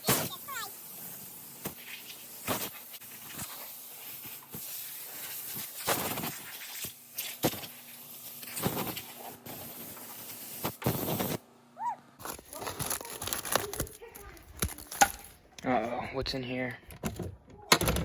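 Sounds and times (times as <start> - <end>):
hands handling objects: 12.2 - 15.7.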